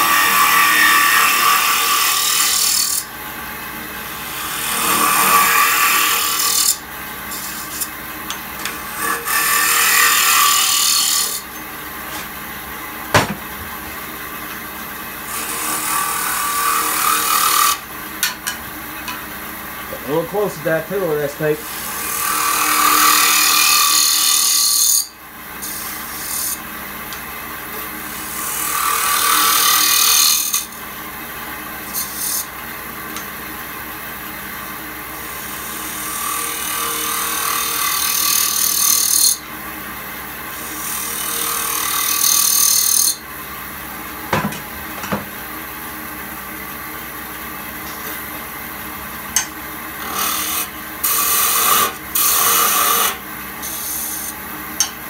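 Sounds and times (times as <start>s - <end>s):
wood lathe humming: 0.0s - 3.0s, 4.0s - 12.3s, 15.2s - 17.9s, 19.9s - 25.0s, 25.7s - 26.6s, 31.8s - 32.5s, 35.3s - 39.4s, 40.5s - 43.2s, 47.9s - 54.9s
turning tool cutting wood: 0.0s - 3.1s, 4.2s - 8.0s, 8.6s - 12.4s, 15.3s - 17.8s, 19.9s - 26.6s, 27.8s - 30.8s, 31.8s - 32.5s, 35.3s - 39.4s, 40.5s - 43.2s, 49.3s - 55.0s
sharp knocks: 13.1s - 13.7s.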